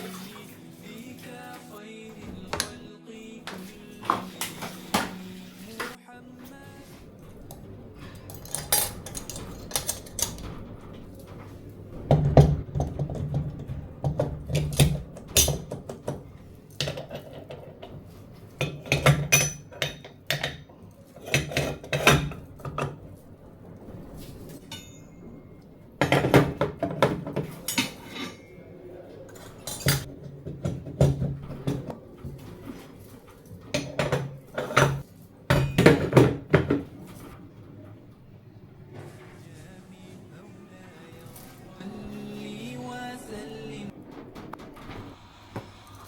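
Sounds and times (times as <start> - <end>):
metal kitchenware clattering: 5.8 - 38.4.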